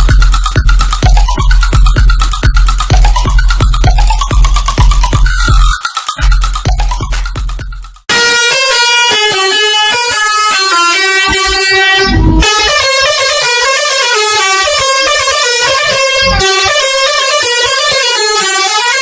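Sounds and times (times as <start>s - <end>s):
electronic music: 0.0s - 19.0s
multi-tone bus air horns playing tune: 8.1s - 19.0s.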